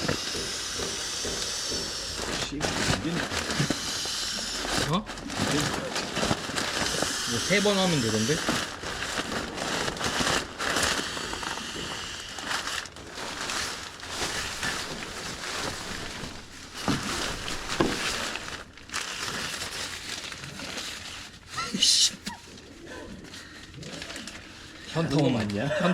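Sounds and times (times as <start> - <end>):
nylon crinkling and rustling: 0.0 - 25.9.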